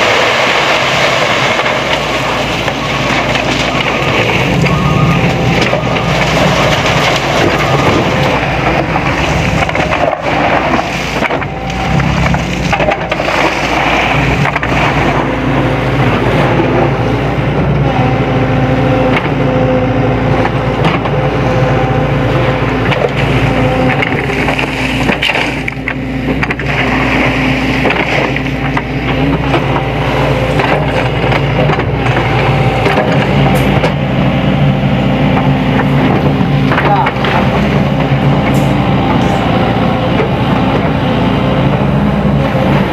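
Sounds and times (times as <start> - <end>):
gravel knocks and crunches: 0.0 - 16.9
excavator diesel engine under load: 0.0 - 42.9.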